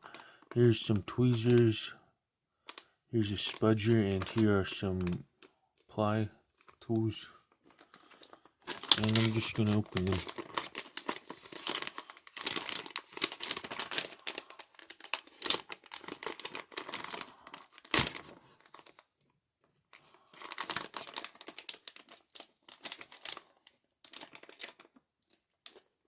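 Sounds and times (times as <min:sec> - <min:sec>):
packaging crinkling and tearing: 0:03.4 - 0:05.2, 0:07.7 - 0:19.1, 0:19.9 - 0:26.0.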